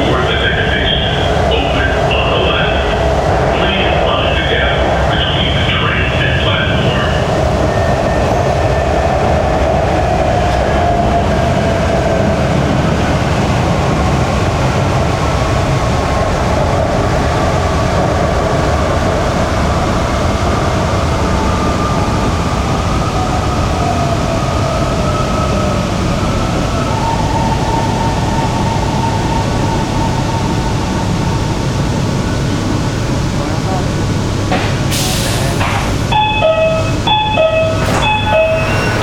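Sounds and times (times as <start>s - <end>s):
faint train whine: 0.0s - 13.0s, 21.6s - 39.0s
metro train rumble: 0.0s - 39.0s.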